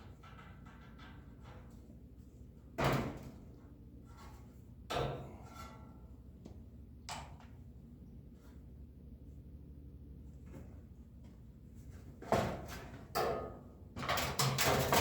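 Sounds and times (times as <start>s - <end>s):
metal parts knocking and rattling: 14.0s - 15.0s.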